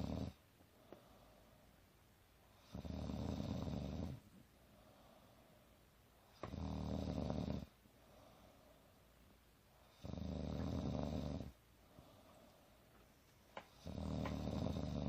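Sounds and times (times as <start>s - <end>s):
low buzzing snores: 0.0s - 0.4s, 2.6s - 4.2s, 6.3s - 8.5s, 9.8s - 12.2s, 13.7s - 15.0s.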